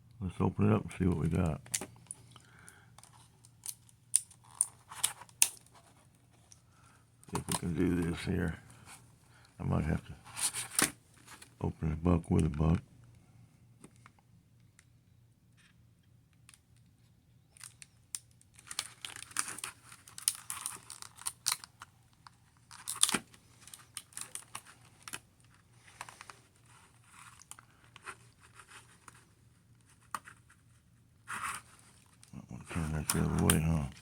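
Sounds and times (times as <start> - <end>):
packaging crinkling: 17.6 - 29.2.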